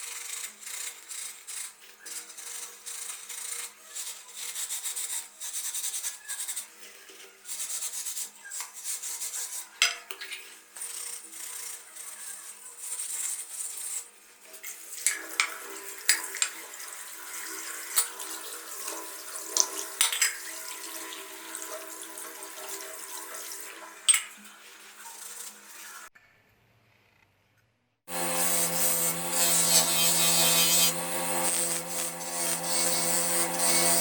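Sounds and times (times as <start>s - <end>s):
running water: 15.0s - 26.1s.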